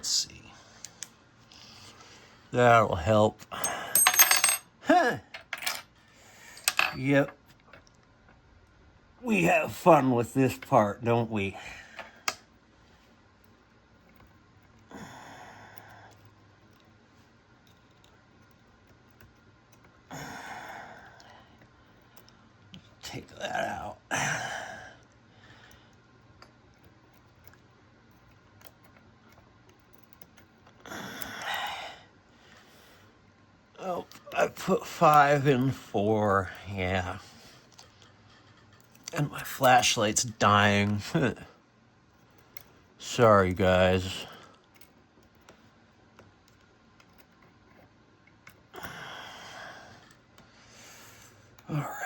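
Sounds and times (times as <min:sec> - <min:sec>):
faint ticks and clicks of tools: 0:00.8 - 0:01.6, 0:13.3 - 0:23.2, 0:25.0 - 0:31.8, 0:42.1 - 0:43.0, 0:44.2 - 0:49.1, 0:49.7 - 0:51.7.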